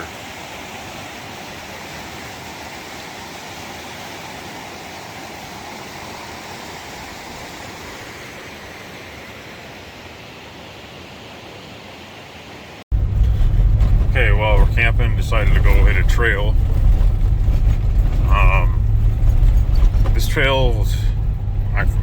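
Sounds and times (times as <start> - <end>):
creek water rushing: 0.0 - 12.8.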